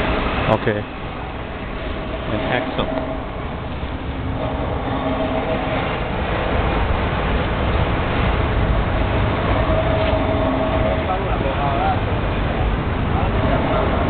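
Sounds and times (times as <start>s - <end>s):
low vehicle rumble: 0.0s - 14.0s.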